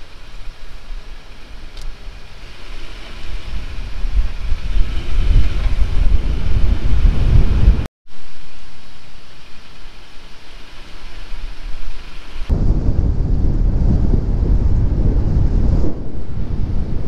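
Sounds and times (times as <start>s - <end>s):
wind buffeting microphone: 0.0s - 7.9s, 10.5s - 17.0s.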